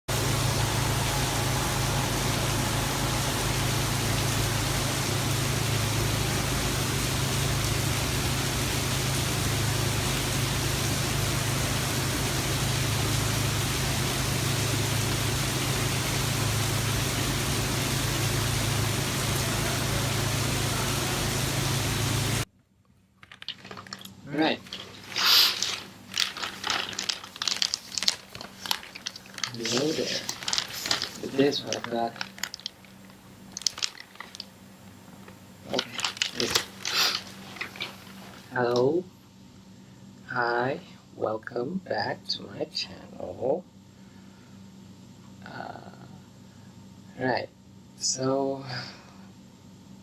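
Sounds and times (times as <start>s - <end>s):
low hum: 0.0s - 22.5s
steady hiss: 0.0s - 22.5s, 23.3s - 50.0s.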